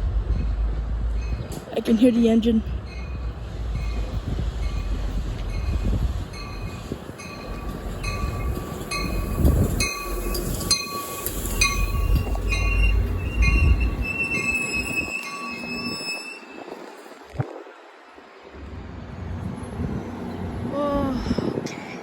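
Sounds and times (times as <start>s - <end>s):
diesel train rumbling: 0.0s - 22.0s
locomotive bell clanging: 2.8s - 16.6s
train brakes squealing: 2.9s - 17.2s.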